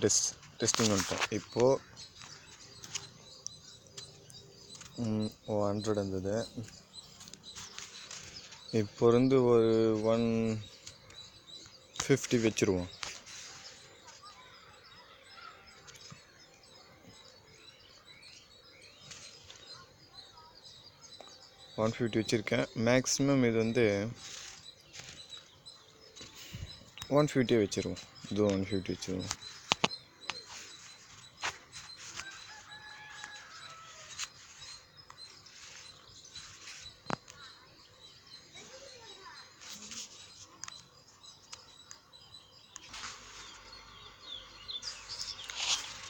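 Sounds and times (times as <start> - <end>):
birds chirping: 0.0 - 46.0
sharp clicks: 26.2 - 30.5
rooster crowing: 32.2 - 34.2.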